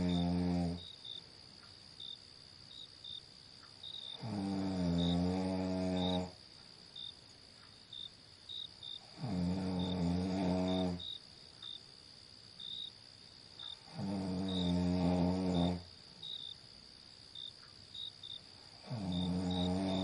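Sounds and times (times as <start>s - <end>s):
person snoring: 0.0s - 0.8s, 4.2s - 6.4s, 9.1s - 11.0s, 13.9s - 15.9s, 18.8s - 20.0s
crickets chirping: 0.0s - 20.0s.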